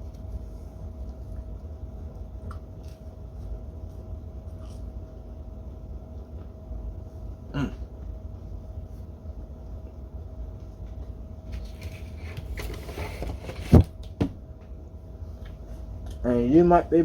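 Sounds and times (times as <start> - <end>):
steady low hum: 0.0 - 17.0
rustling and handling objects: 10.7 - 14.3.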